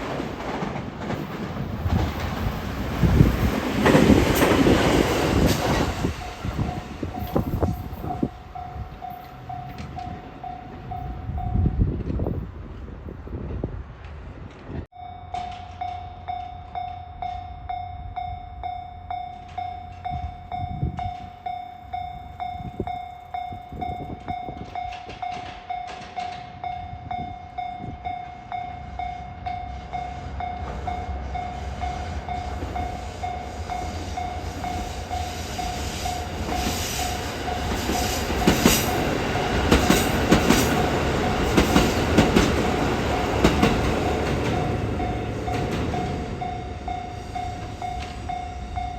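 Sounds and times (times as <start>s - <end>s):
wheels clacking over rail joints: 0.0s - 11.0s, 19.1s - 48.9s
train running noise: 0.0s - 48.9s
electronic crossing warning bell: 6.0s - 11.8s, 14.9s - 39.9s, 43.1s - 48.9s.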